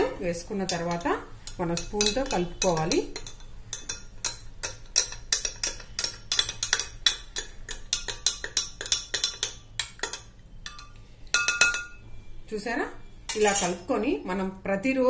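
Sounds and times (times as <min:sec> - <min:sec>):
spoon clinking in a glass: 0:00.7 - 0:12.0, 0:13.3 - 0:13.8.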